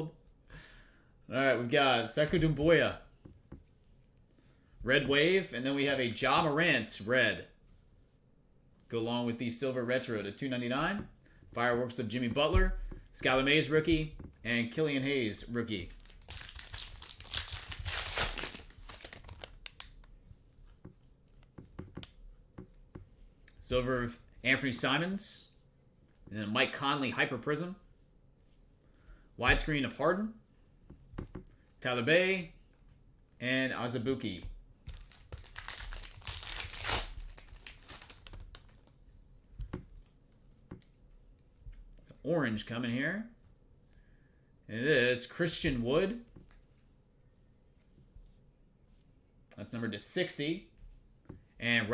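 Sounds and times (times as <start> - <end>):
foil wrapper crinkling and tearing: 15.9 - 20.1, 34.9 - 38.8.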